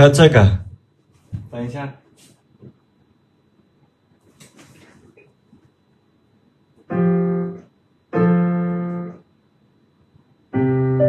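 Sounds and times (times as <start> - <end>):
piano chords: 6.9 - 9.2, 10.5 - 11.0.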